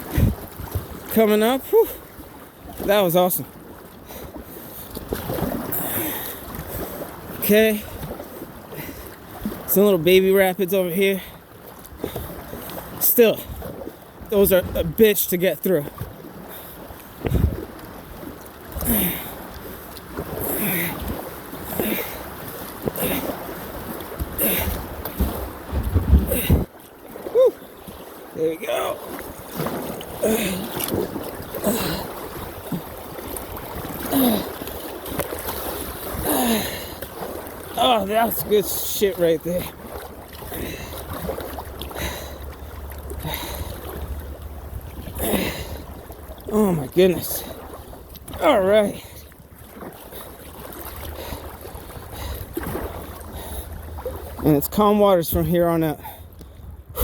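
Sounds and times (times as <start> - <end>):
wind rumble on microphone: 0.0 - 1.0, 17.2 - 17.8, 25.1 - 26.8
water rushing: 0.0 - 11.4, 12.0 - 57.0
paddle strokes splashing: 0.0 - 57.0.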